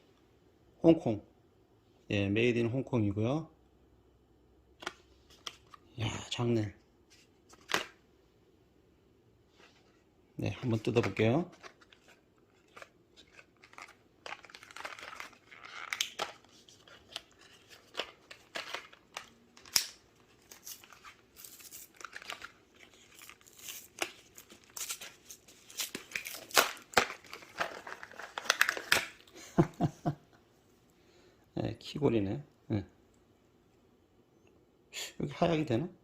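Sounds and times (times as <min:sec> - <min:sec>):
plastic and paper crinkling and tearing: 0:09.6 - 0:29.3.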